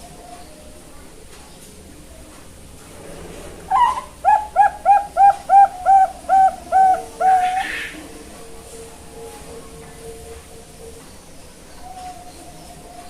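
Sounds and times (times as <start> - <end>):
dove cooing: 3.6 - 9.7.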